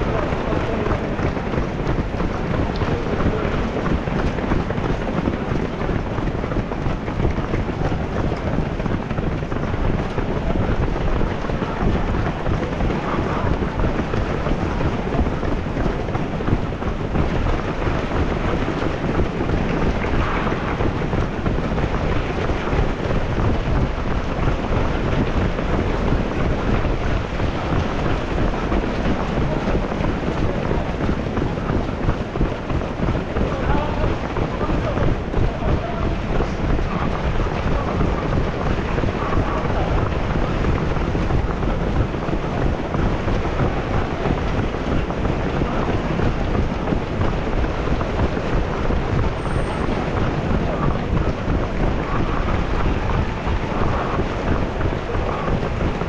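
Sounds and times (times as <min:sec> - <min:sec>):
wind buffeting microphone: 0:00.0 - 0:56.0.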